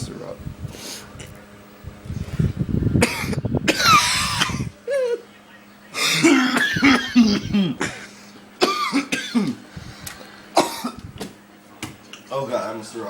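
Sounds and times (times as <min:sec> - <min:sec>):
person coughing: 0:03.0 - 0:05.2, 0:06.0 - 0:09.6, 0:10.6 - 0:11.0.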